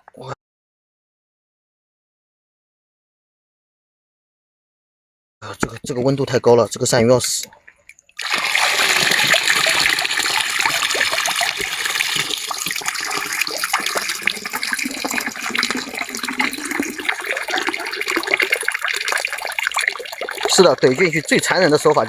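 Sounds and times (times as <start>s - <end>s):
water running and trickling: 6.8s - 22.0s.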